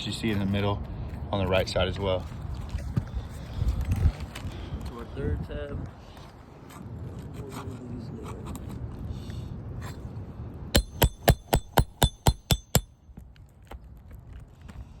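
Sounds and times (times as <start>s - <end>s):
hammer striking metal: 10.8s - 12.9s.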